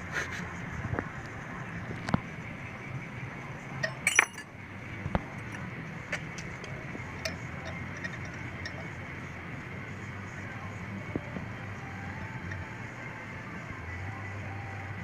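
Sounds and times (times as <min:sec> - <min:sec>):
steady low hum: 0:00.0 - 0:15.0
metal tools clinking: 0:03.8 - 0:04.5, 0:05.4 - 0:09.0.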